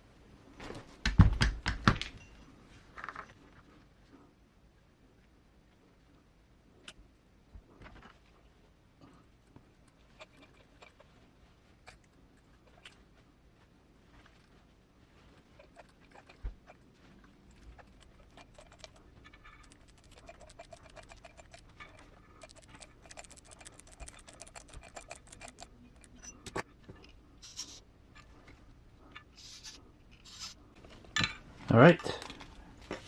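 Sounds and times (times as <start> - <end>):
small hardware clicking and scratching: 15.6 - 28.4, 29.1 - 30.6.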